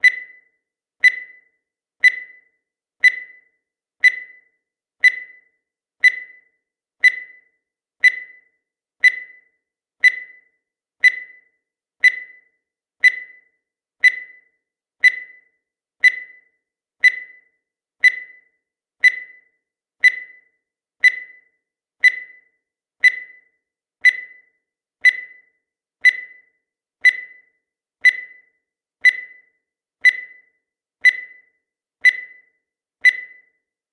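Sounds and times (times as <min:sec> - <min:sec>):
short high-pitched beeps: 0:00.0 - 0:33.6.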